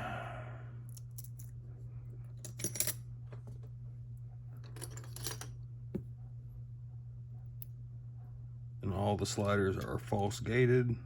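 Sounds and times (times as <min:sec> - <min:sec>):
small metal lock parts clinking: 0:00.9 - 0:01.6, 0:02.4 - 0:03.1, 0:04.6 - 0:05.6.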